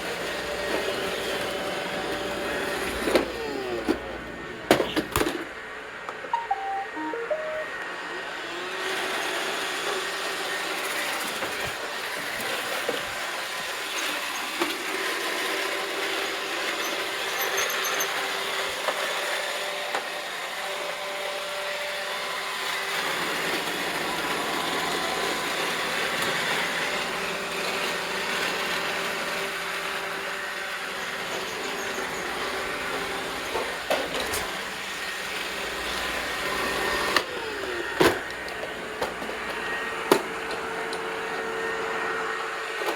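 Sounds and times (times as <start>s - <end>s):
robot vacuum cleaner whirring: 0.0s - 6.7s, 7.7s - 42.9s.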